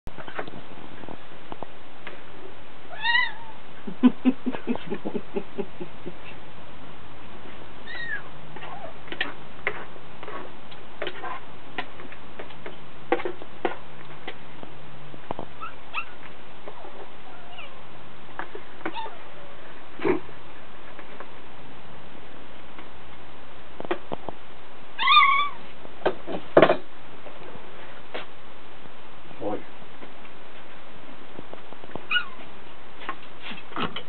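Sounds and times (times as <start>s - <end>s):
pet meow-like calls: 2.9s - 3.6s, 7.8s - 9.0s, 17.2s - 17.8s, 18.8s - 19.6s, 25.0s - 25.6s, 32.1s - 32.4s.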